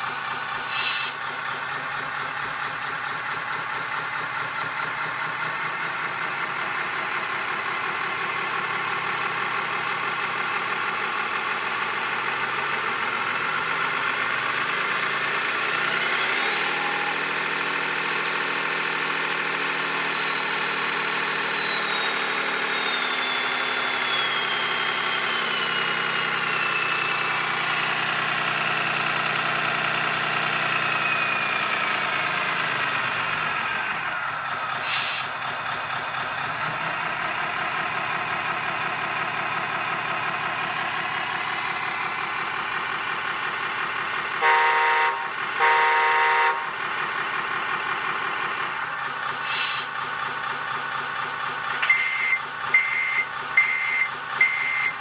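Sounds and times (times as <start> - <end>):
simulated truck engine: 0.0 - 55.0
brief hiss: 0.7 - 1.2, 34.8 - 35.3, 49.4 - 49.9
short horn blasts: 44.4 - 46.7.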